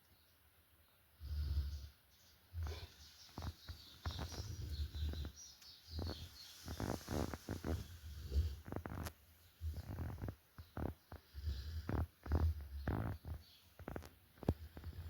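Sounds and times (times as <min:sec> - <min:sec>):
faint bird chirps: 0:00.0 - 0:11.4
dog snoring: 0:02.6 - 0:03.5, 0:06.8 - 0:15.0.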